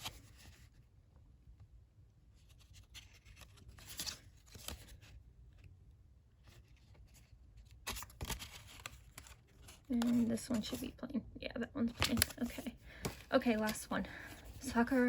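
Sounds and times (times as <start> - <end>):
paper rustling: 2.4 - 5.2, 6.4 - 10.9, 11.9 - 15.0.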